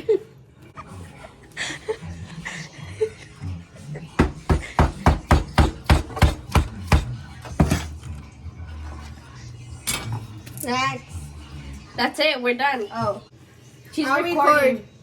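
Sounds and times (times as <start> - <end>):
knife chopping on cutting board: 4.2 - 7.8.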